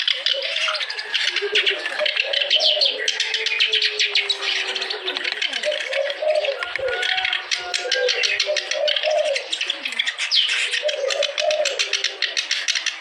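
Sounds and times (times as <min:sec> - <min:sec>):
reed warbler chattering song: 0:00.0 - 0:13.0.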